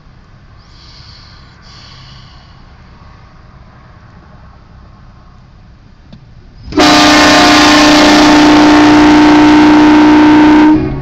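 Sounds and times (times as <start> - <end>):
train horn blast: 6.7 - 11.0.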